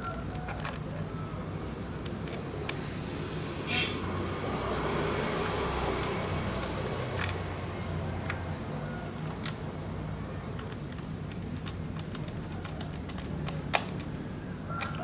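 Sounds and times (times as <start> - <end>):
laptop parts clicking: 0.0 - 1.2, 1.9 - 2.9, 6.0 - 15.0.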